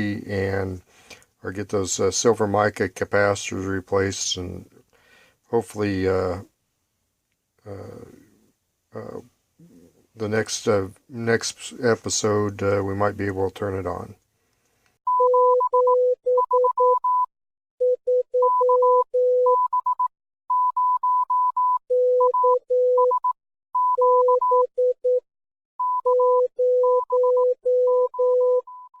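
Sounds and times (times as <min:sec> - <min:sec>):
morse code beeps: 0:15.1 - 0:25.2, 0:25.8 - 0:29.0.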